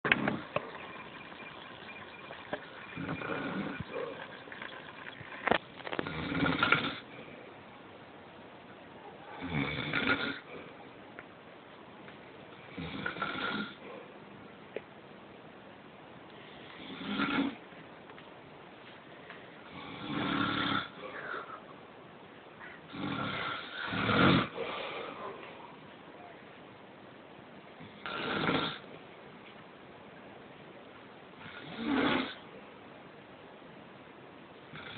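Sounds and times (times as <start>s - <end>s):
man snoring: 3.0s - 3.9s, 6.0s - 7.0s, 9.4s - 10.5s, 12.7s - 13.8s, 19.7s - 21.0s, 22.9s - 24.6s, 27.9s - 28.8s, 31.4s - 32.4s
quiet breathing: 6.9s - 7.7s, 16.3s - 17.0s, 18.8s - 20.2s, 20.8s - 26.6s.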